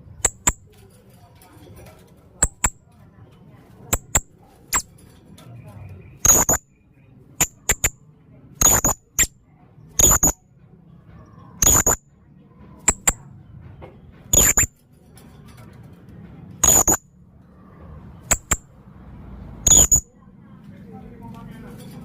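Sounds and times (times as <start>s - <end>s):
parrot calling: 6.2s - 6.6s, 8.6s - 9.2s, 10.0s - 10.3s, 11.6s - 12.0s, 14.3s - 14.7s, 16.6s - 17.0s, 19.7s - 20.0s.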